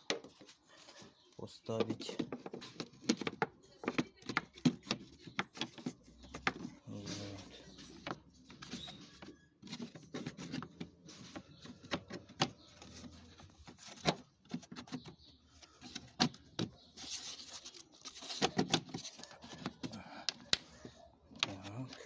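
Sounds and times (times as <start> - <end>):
plastic rubbing and scraping: 0.0 - 22.0
plastic clicks and knocks: 1.8 - 6.7, 8.0 - 15.2, 18.2 - 21.7.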